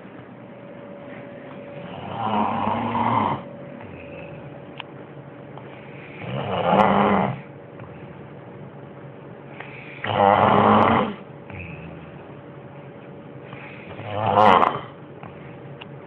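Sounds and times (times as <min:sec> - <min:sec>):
loud snores: 0:01.8 - 0:04.5, 0:06.2 - 0:07.5, 0:10.0 - 0:12.2, 0:13.8 - 0:15.0.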